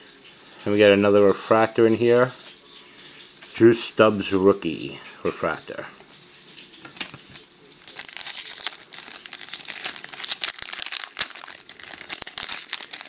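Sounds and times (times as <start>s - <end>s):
foil wrapper crinkling and tearing: 6.9s - 13.0s.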